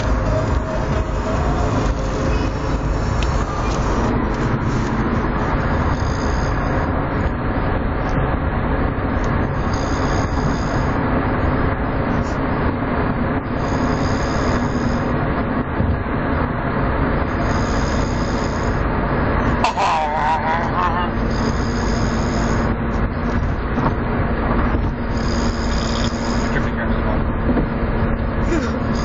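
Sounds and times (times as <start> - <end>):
person snoring: 0.0 - 6.9, 9.6 - 11.0, 13.6 - 15.1, 17.3 - 18.8, 19.6 - 22.7, 25.1 - 26.7, 28.5 - 29.0
loud rumbling noise: 0.0 - 29.0.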